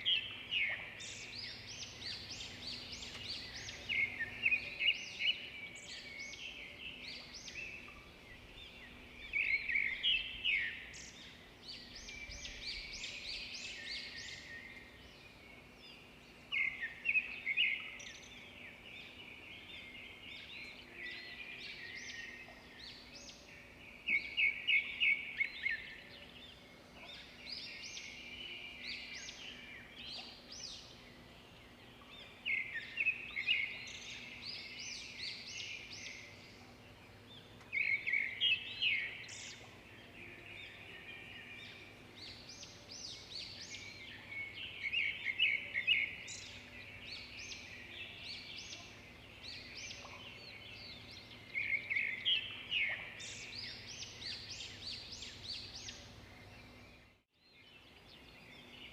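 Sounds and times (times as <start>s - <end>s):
small birds chirping: 0.0s - 58.9s.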